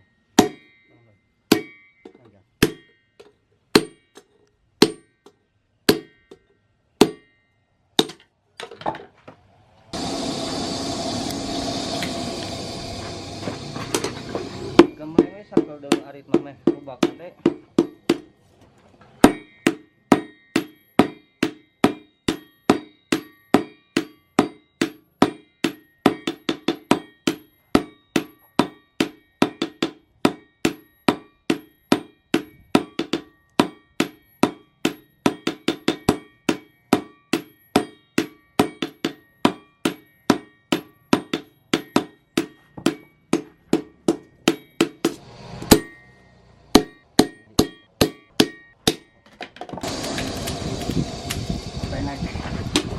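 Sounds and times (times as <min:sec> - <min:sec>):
hammer striking steel on anvil: 0:00.0 - 0:08.8, 0:09.9 - 0:18.4, 0:19.2 - 0:50.3.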